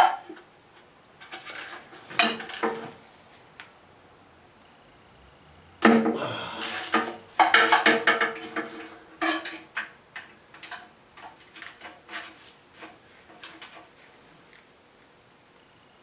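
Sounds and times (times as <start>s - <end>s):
metal tools clattering: 1.2s - 2.9s, 6.6s - 9.8s.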